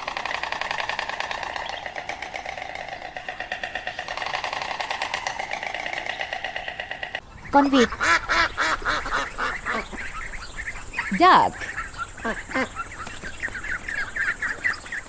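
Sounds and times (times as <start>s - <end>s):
stork bill clattering: 0.0s - 9.8s.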